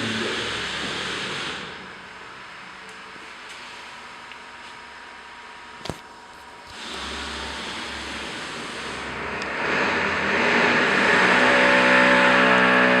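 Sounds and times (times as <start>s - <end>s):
distorted guitar chords: 9.2s - 13.0s.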